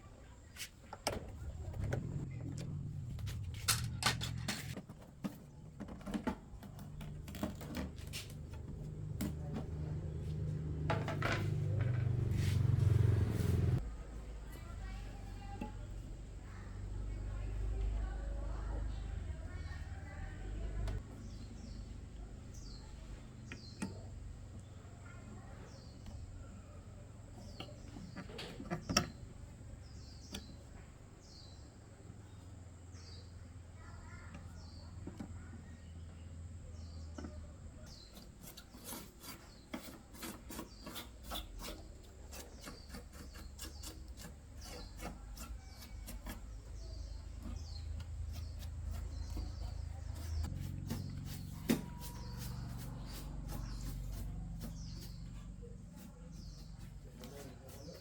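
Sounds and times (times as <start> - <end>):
rubbing and scraping: 0.4 - 13.9, 36.8 - 58.0
low hum: 1.1 - 4.8.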